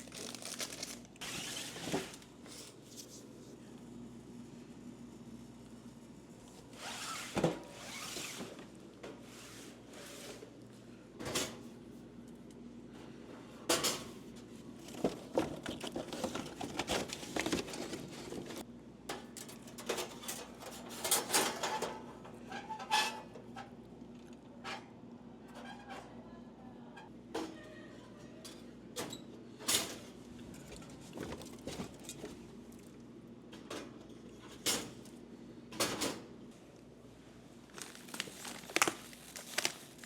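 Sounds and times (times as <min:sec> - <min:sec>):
snack packets rustling: 0:00.0 - 0:01.4, 0:37.6 - 0:40.0.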